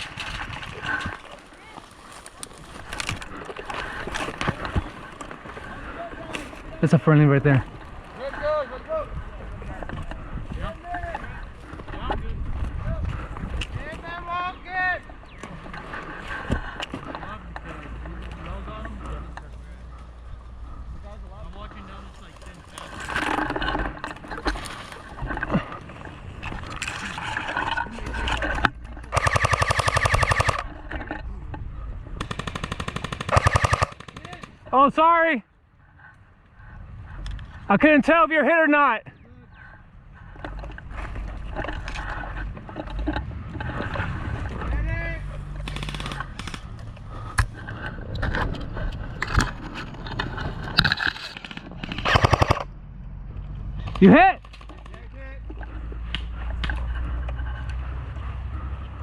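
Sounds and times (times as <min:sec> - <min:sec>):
scraping: 0:21.6 - 0:31.6, 0:40.4 - 0:52.7
airsoft gun automatic fire: 0:29.1 - 0:30.6, 0:32.2 - 0:34.6, 0:45.6 - 0:46.6, 0:52.0 - 0:52.6.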